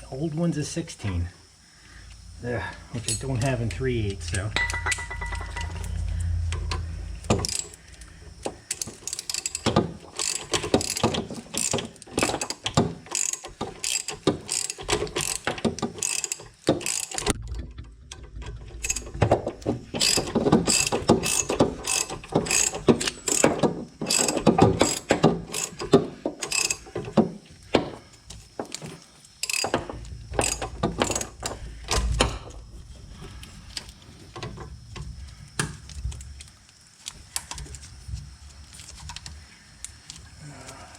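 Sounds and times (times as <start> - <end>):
hand ratchet clicking: 3.0 - 17.4, 18.8 - 27.2, 28.2 - 31.7.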